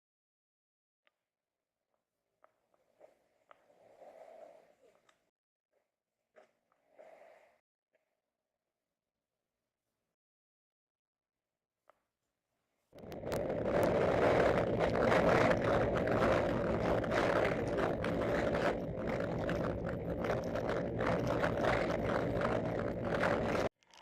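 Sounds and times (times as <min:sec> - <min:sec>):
scooter engine running: 0:13.0 - 0:23.7
wind buffeting microphone: 0:13.0 - 0:23.7.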